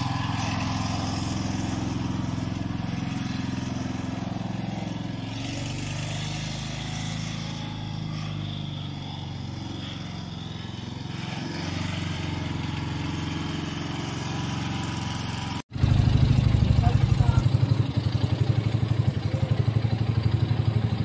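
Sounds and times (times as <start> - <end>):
mower engine running: 0.0 - 21.0.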